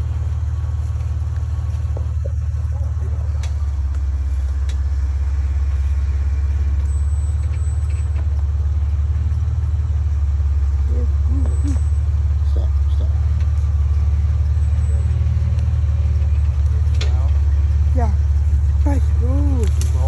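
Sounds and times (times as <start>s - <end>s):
off-road vehicle engine rumbling: 0.0s - 20.0s
light clicks: 18.4s - 20.0s.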